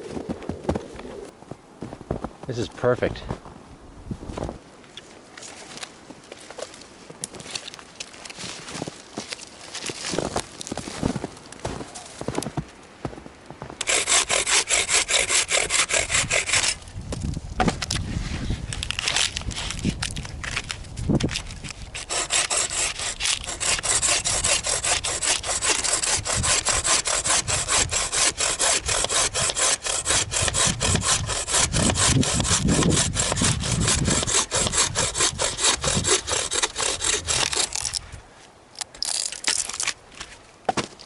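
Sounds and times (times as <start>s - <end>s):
hand saw cutting wood: 13.8s - 16.8s, 21.9s - 38.0s.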